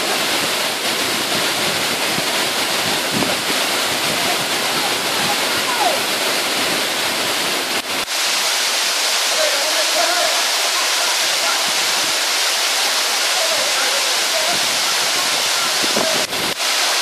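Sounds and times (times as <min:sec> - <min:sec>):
waterfall pouring: 0:00.0 - 0:17.0.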